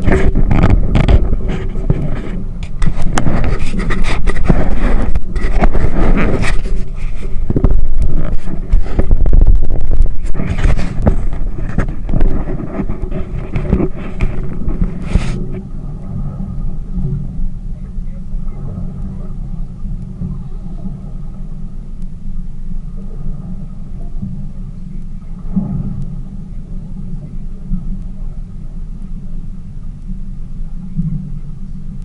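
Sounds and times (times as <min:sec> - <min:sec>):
knocks and scrapes on microphone: 0:00.0 - 0:17.4, 0:25.4 - 0:26.1
wind buffeting microphone: 0:00.0 - 0:29.8
boat engine rumbling: 0:00.0 - 0:32.0.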